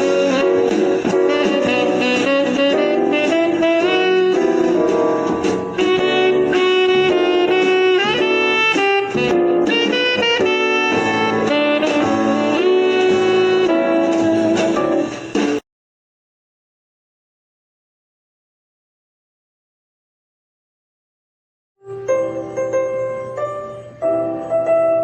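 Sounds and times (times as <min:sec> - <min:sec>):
instrumental music: 0:00.0 - 0:15.6, 0:21.8 - 0:25.0.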